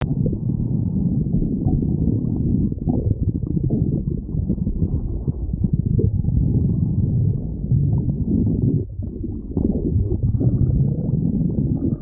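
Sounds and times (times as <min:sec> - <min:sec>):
stomach growling: 0:00.0 - 0:12.0.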